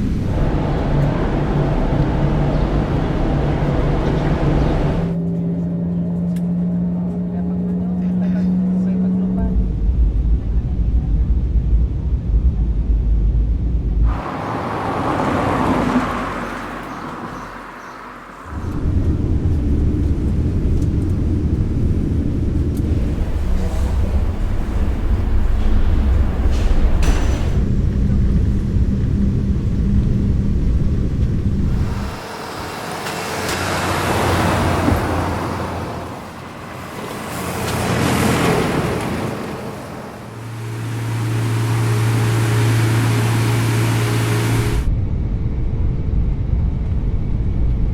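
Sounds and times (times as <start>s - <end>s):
rushing noise: 0.0s - 5.2s, 13.6s - 45.0s
deep low rumble: 0.0s - 6.4s, 7.1s - 14.2s, 18.4s - 32.2s, 40.2s - 47.9s
vehicles passing by: 0.0s - 44.9s
low engine drone: 0.0s - 47.9s.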